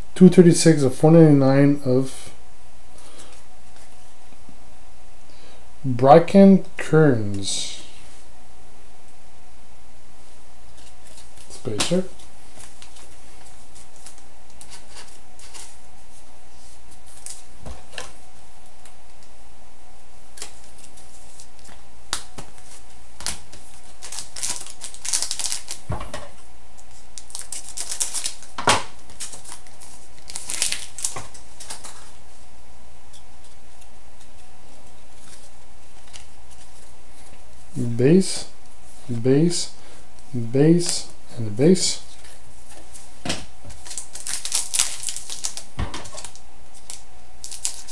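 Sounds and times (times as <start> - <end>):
trading cards clicking and rustling: 10.8 - 15.8, 20.4 - 25.8, 43.7 - 47.9.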